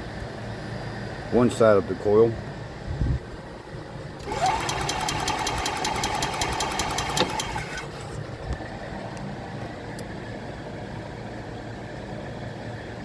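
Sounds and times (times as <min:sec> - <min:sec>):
starter motor cranking engine: 0:04.2 - 0:08.2.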